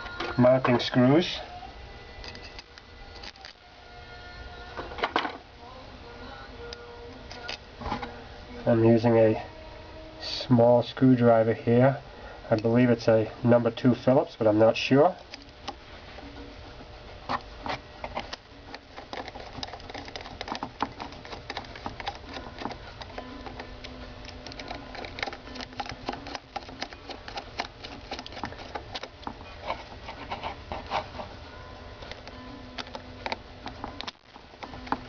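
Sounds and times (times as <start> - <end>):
screwdriver clicking on screws: 24.3 - 29.1.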